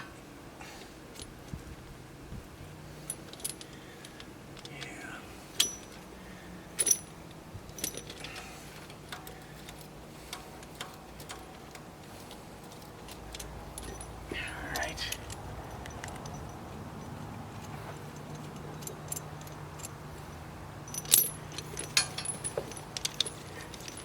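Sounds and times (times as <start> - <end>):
chain links clinking: 3.0 - 4.0, 4.6 - 6.1, 6.8 - 9.9, 10.6 - 24.0.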